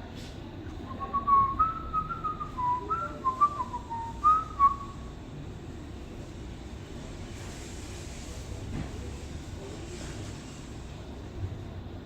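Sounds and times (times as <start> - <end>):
low background hum: 0.0 - 12.0
person whistling a tune: 0.9 - 5.0.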